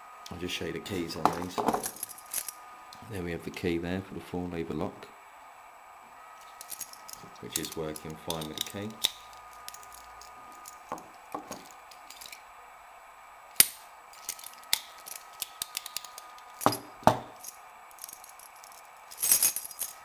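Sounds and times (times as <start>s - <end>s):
padlock and key clicking: 13.6s - 18.7s.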